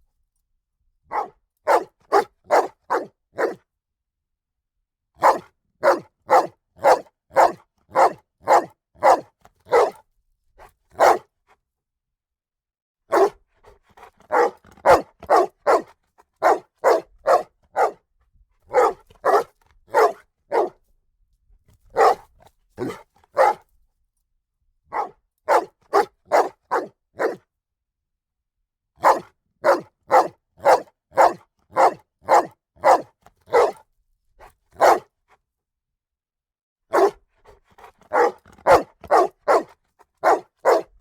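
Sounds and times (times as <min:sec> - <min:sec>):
dog barking loudly: 0:01.1 - 0:03.6, 0:05.2 - 0:10.0, 0:11.0 - 0:11.3, 0:13.1 - 0:13.4, 0:14.3 - 0:18.0, 0:18.7 - 0:20.8, 0:21.9 - 0:23.6, 0:24.9 - 0:27.4, 0:29.0 - 0:33.8, 0:34.8 - 0:35.1, 0:36.9 - 0:37.2, 0:37.8 - 0:41.0.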